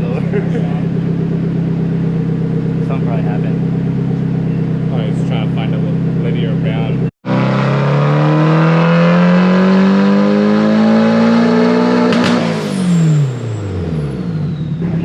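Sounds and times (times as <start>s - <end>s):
engine revving on dyno: 2.8s - 15.0s
sharp burst: 12.0s - 13.7s.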